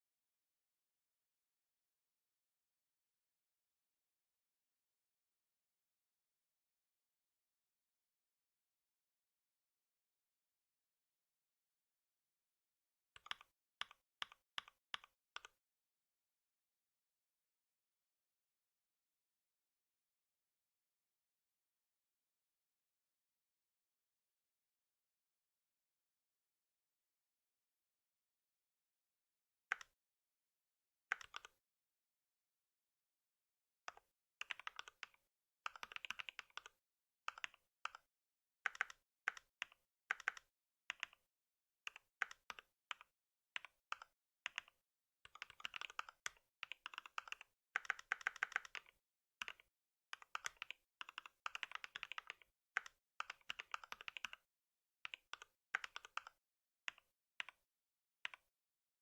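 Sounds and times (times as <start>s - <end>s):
typing on computer keyboard: 13.2s - 15.6s, 31.1s - 31.6s, 33.9s - 38.0s, 38.7s - 41.2s, 41.9s - 44.7s, 45.3s - 54.4s, 55.1s - 57.6s.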